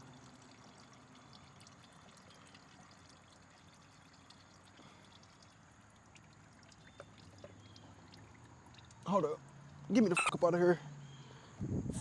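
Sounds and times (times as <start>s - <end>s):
oil trickling: 0.0s - 11.5s.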